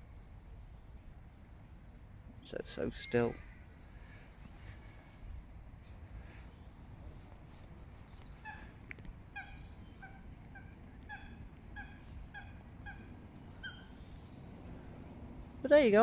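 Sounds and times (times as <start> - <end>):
faint goose honks: 8.3 - 14.1.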